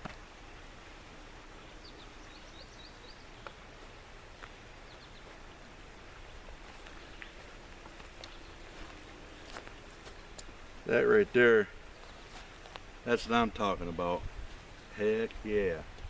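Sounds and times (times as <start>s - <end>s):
steady background hiss: 0.0s - 16.0s
bird chirping: 1.6s - 3.6s, 4.8s - 5.4s, 8.1s - 10.5s, 11.8s - 12.6s.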